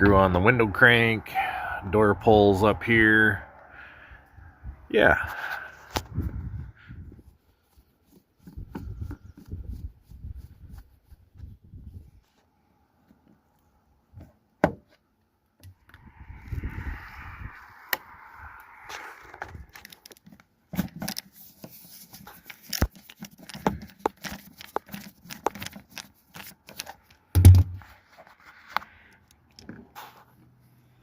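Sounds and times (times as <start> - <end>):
heavy thump: 27.4 - 27.8.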